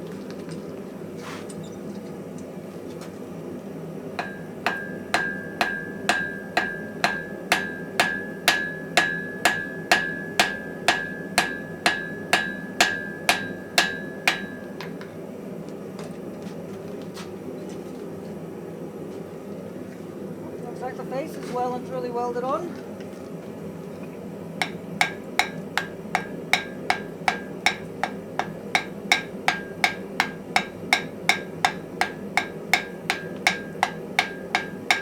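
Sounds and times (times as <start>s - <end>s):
hammer ringing on anvil: 4.2s - 15.0s, 24.6s - 35.0s.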